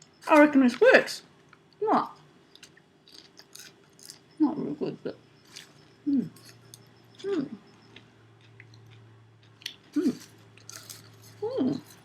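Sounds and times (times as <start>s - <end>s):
low steady hum: 0.0s - 12.0s
popcorn being chewed: 1.5s - 4.4s, 5.4s - 12.0s.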